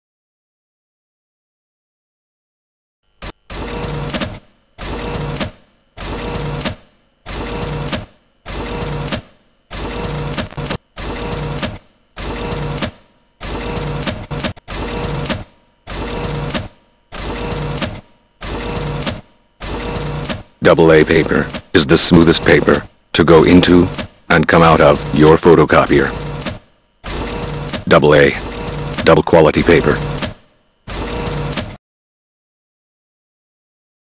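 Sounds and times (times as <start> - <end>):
photocopier whirring: 3.1 - 31.8.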